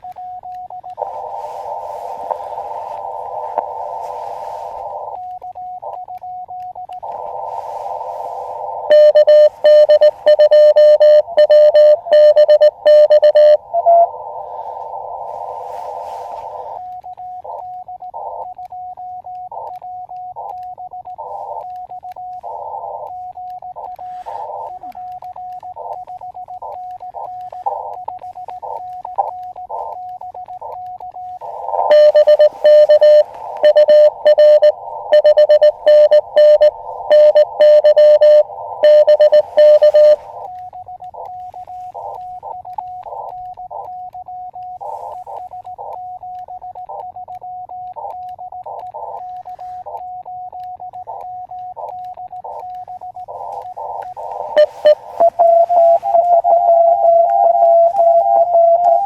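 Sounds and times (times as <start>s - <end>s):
morse code tones: 0.0s - 59.0s
receiver hiss: 0.0s - 59.0s
loud keyed sidetone: 8.9s - 14.1s, 20.4s - 59.0s.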